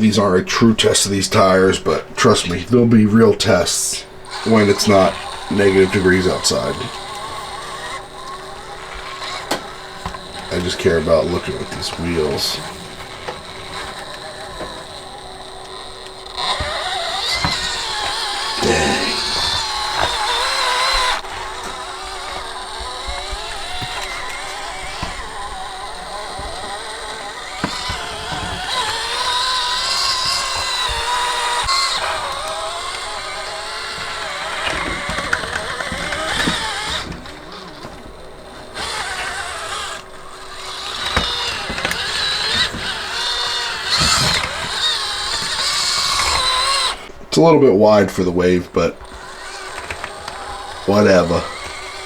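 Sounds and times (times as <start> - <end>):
small electric motor whining: 0.0 - 52.0.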